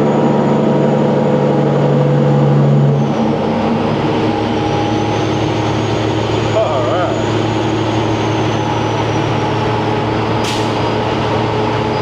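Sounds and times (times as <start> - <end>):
diesel truck engine: 0.0 - 12.0
brief hiss: 10.5 - 10.9.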